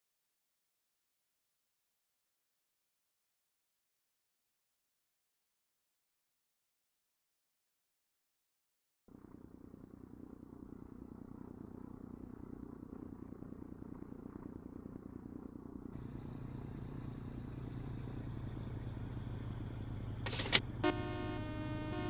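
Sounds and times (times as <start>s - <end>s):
truck engine running: 9.1s - 22.0s.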